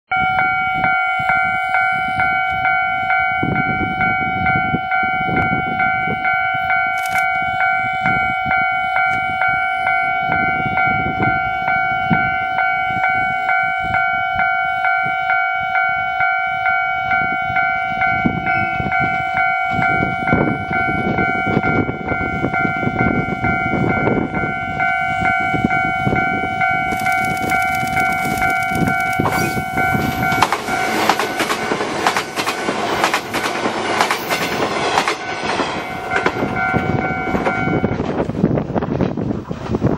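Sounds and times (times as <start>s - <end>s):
level-crossing alarm ringing: 0.1s - 32.5s, 35.2s - 38.0s
approaching train rushing: 17.0s - 39.9s.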